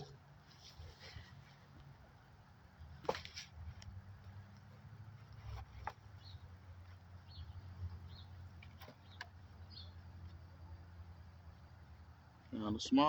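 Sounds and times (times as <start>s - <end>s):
low steady rumble: 0.0s - 13.0s
bird chirping faintly: 6.0s - 12.1s.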